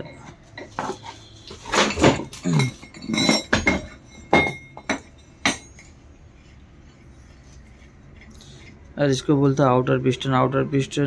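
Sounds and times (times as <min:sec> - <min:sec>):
metal parts clinking: 0:00.6 - 0:06.0.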